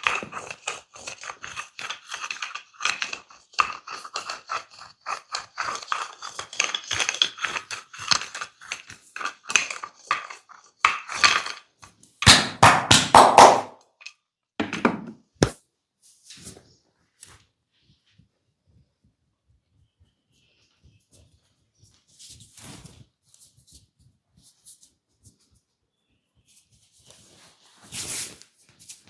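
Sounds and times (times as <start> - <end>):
loud slaps: 12.2 - 13.7
hands striking in massage: 12.2 - 13.8.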